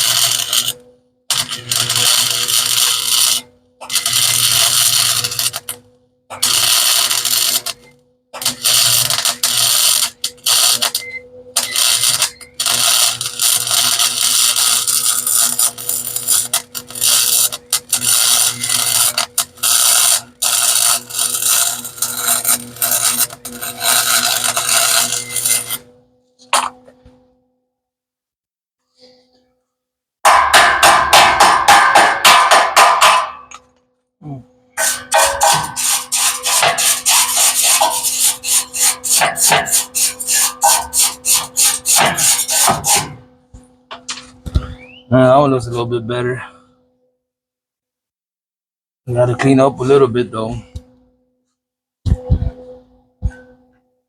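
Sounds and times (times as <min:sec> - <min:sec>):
welding arc crackling: 0:00.0 - 0:25.9, 0:34.8 - 0:43.2.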